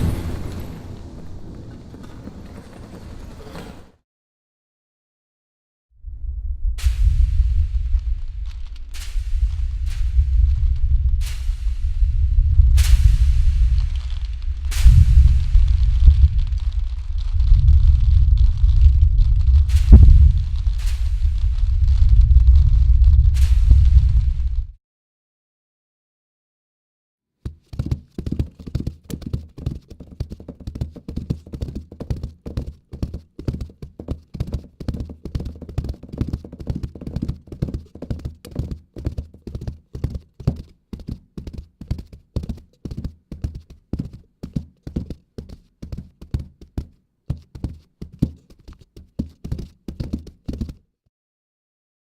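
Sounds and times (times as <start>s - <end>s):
hollow hoof clip-clop knocks: 27.4s - 50.8s.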